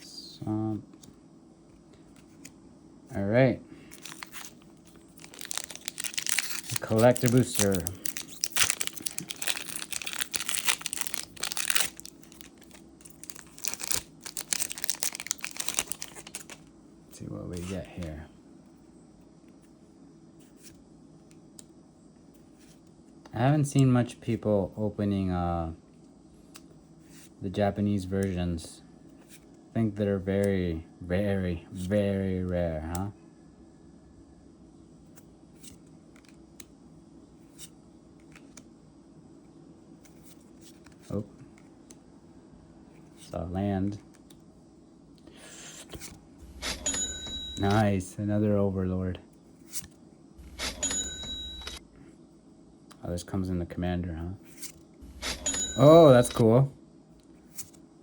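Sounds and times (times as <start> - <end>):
foil wrapper crinkling and tearing: 3.9 - 16.6.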